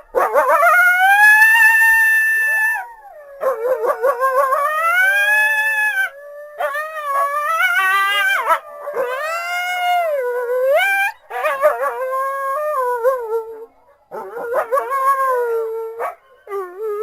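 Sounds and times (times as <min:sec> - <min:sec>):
coyote howling: 0:00.2 - 0:13.4.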